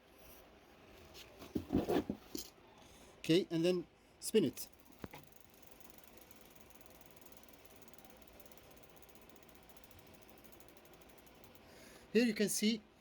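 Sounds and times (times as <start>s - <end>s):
bicycle freewheel ratchet ticking: 4.5s - 12.6s.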